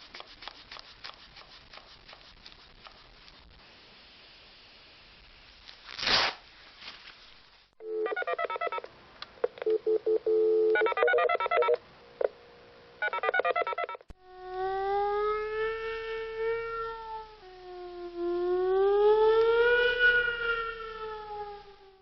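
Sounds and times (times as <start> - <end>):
hiss: 0.0 - 6.8
telephone dialing beeps: 7.8 - 8.8, 9.4 - 11.8, 13.0 - 14.0
steady low dial tone: 7.8 - 12.4
siren wailing: 13.2 - 22.0.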